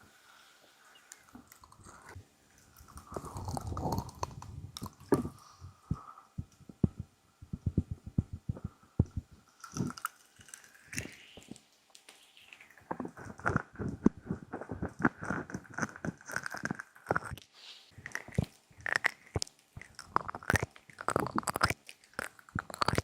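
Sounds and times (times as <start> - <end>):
fingers rubbing on microphone: 3.0 - 10.0, 12.6 - 17.4
fingers tapping on microphone: 4.2 - 10.0.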